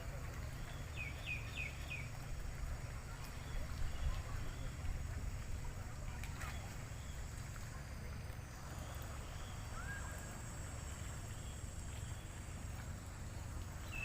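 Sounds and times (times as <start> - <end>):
wind rumble on microphone: 1.9 - 6.6.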